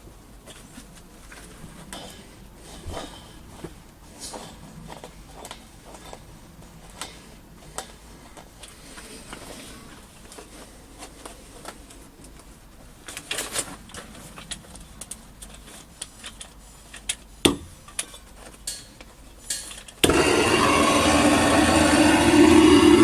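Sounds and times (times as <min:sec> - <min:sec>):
furnace burner roaring: 0:20.0 - 0:23.0.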